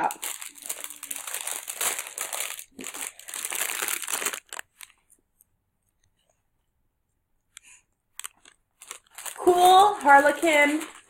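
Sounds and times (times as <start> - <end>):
wrapper crinkling and rustling: 0.0 - 5.2, 8.2 - 11.0.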